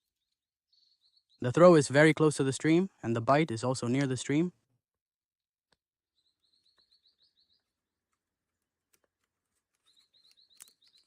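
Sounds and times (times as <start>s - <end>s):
high bird chirps: 0.7s - 1.9s, 6.1s - 7.8s, 9.8s - 11.0s.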